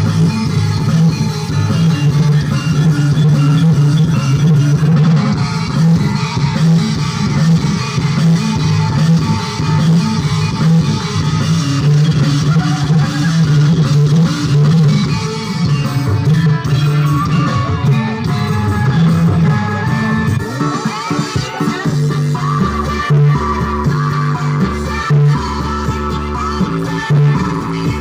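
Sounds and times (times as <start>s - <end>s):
heavy pulsing bass line: 0.0s - 28.0s
loud remix music: 0.0s - 28.0s.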